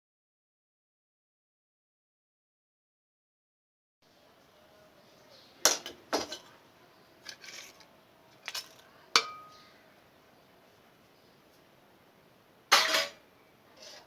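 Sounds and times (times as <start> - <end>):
dishes and utensils knocking: 5.7 - 6.5, 8.4 - 9.6, 12.7 - 13.2.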